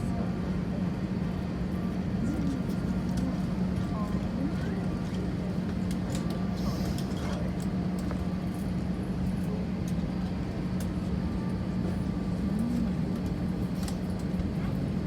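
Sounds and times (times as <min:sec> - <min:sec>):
airliner cabin hum: 0:00.0 - 0:15.0.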